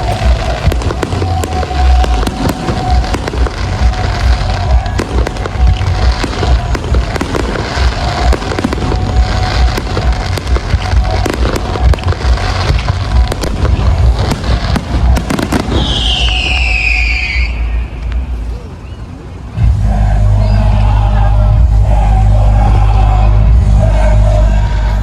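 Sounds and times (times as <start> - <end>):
deep fireworks booms: 0.0 - 17.6
fireworks sharp bangs: 0.0 - 17.7
fireworks crackling: 0.0 - 18.4.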